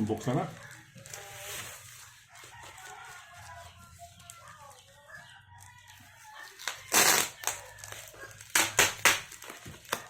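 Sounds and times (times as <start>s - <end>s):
packing tape tearing: 6.6s - 10.0s.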